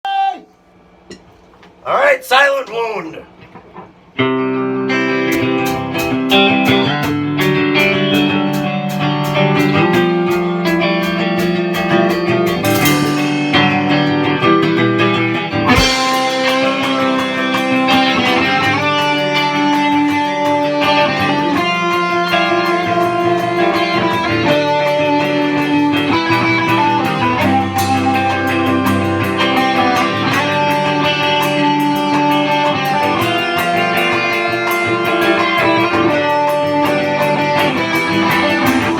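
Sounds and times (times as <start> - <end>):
plucked guitar notes: 3.4 - 38.9
low bass notes: 8.9 - 38.9.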